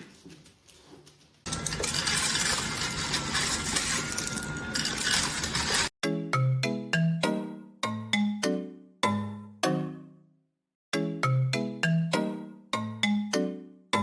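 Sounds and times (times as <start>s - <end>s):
clatter of hard objects: 1.5s - 5.9s.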